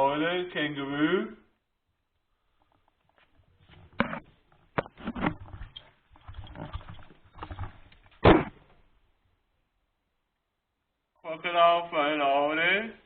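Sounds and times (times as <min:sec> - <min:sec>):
rustling: 0:02.2 - 0:08.9.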